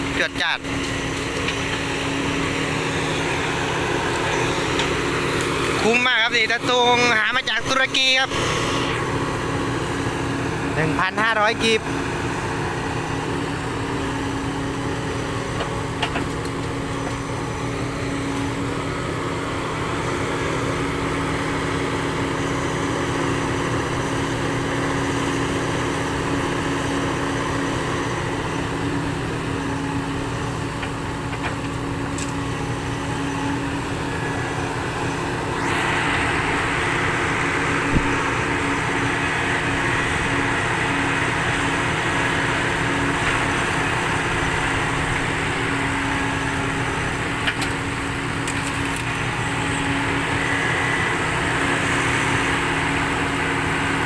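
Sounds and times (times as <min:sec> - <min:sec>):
vehicle engine humming: 0:00.0 - 0:54.0
loud hiss: 0:06.9 - 0:09.4.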